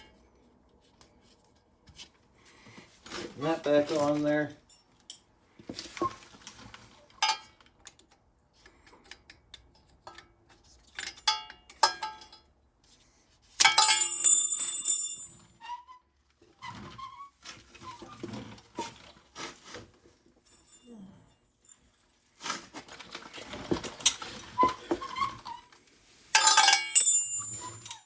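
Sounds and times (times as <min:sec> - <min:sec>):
metal tools clinking and knocking: 0:07.2 - 0:08.1, 0:08.7 - 0:12.5, 0:13.6 - 0:15.6, 0:20.4 - 0:21.9, 0:26.3 - 0:28.0.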